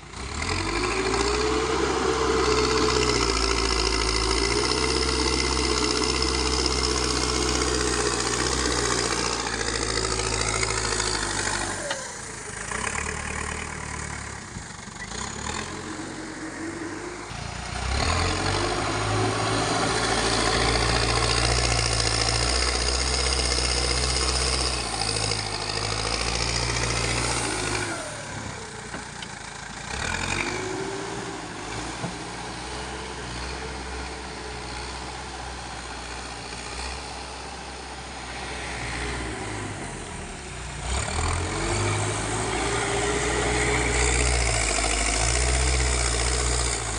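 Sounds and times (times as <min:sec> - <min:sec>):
diesel engine running: 0:00.0 - 0:46.9.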